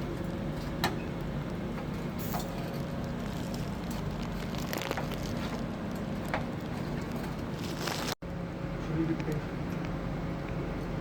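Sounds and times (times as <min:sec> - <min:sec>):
meat crackling on a grill: 0:00.0 - 0:08.2
steady mechanical hum: 0:00.0 - 0:11.0.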